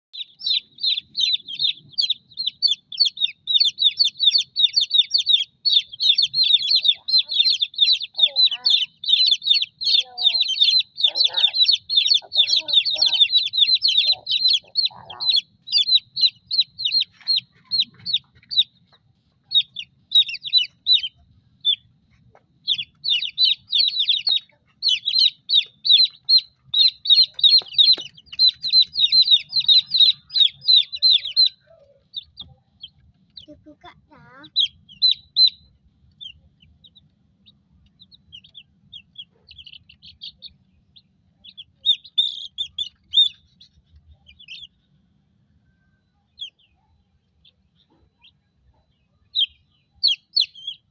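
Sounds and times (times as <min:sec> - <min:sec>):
lower calls: 0:00.2 - 0:33.5
chicks peeping: 0:00.2 - 0:50.9.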